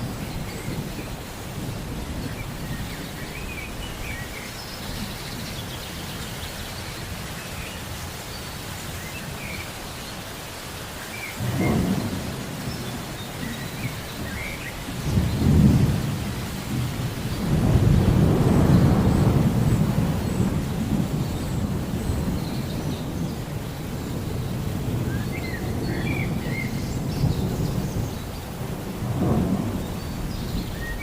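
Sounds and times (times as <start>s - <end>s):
steady rain: 0.0s - 31.0s
thunder rumbling: 11.4s - 31.0s.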